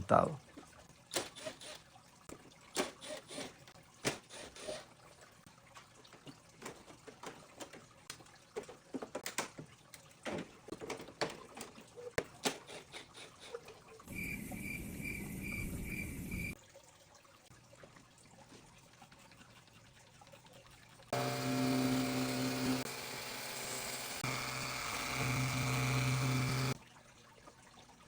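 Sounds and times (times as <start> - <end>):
water dripping and spattering: 0.4 - 14.5.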